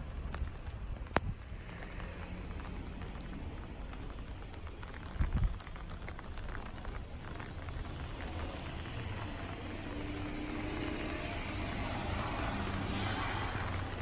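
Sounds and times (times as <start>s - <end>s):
rain hissing: 0.0s - 14.0s
vehicle rumbling past: 7.3s - 14.0s.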